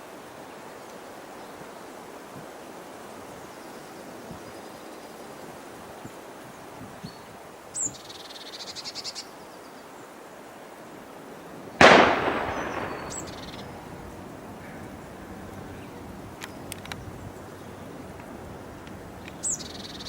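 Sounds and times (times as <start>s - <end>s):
loud bang: 11.8s - 14.0s
bird calling with churring trill: 11.8s - 20.0s.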